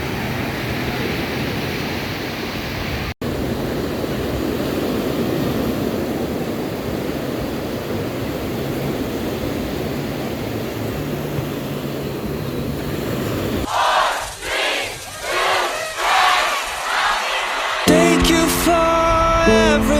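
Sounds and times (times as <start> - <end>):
ocean surf: 0.0 - 19.9.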